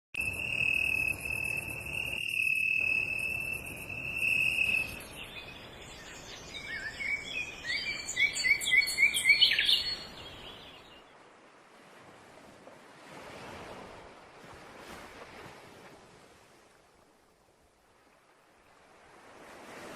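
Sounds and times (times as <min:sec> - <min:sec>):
surf washing on a beach: 0:00.2 - 0:19.9
bird chirping: 0:02.8 - 0:10.9.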